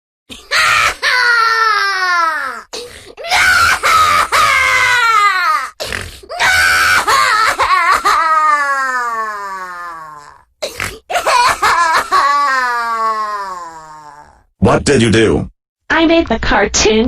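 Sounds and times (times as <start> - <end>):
cartoon baby crying: 0.3 - 14.4.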